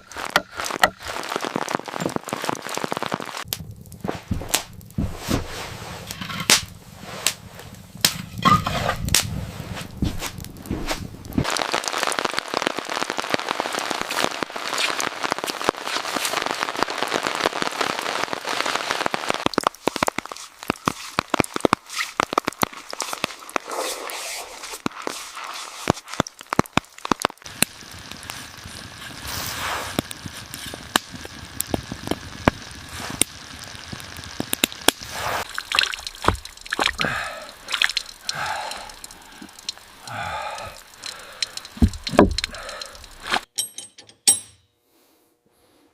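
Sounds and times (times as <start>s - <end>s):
sharp pops: 0.0s - 16.6s, 19.0s - 43.5s
hiss: 27.4s - 43.5s
sharp clicks and drips: 30.8s - 43.9s.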